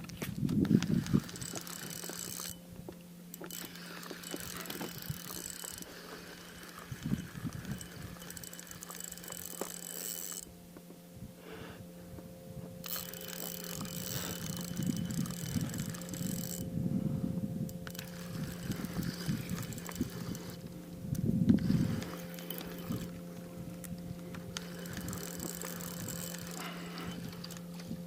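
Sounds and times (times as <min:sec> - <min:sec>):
fishing reel clicking: 0:00.6 - 0:02.6, 0:03.3 - 0:10.5, 0:12.8 - 0:16.7, 0:17.7 - 0:28.0.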